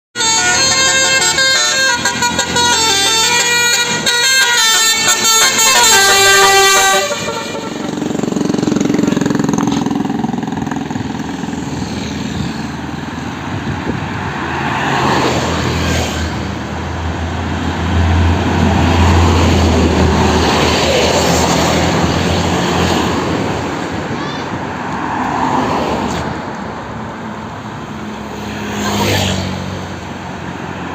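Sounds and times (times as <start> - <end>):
road noise: 0.1 - 30.9
multi-tone bus horn melody: 0.2 - 10.8
bus engine rumble: 0.2 - 30.9.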